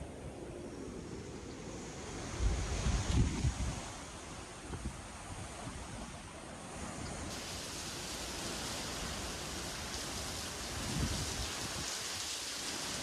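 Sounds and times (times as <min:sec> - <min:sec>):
wind buffeting microphone: 0:02.2 - 0:06.2, 0:10.0 - 0:12.1
heavy rain pouring: 0:07.3 - 0:13.0.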